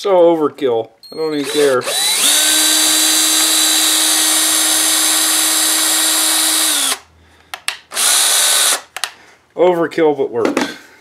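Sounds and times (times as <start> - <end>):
electric drill running: 1.4 - 7.1, 7.9 - 8.9.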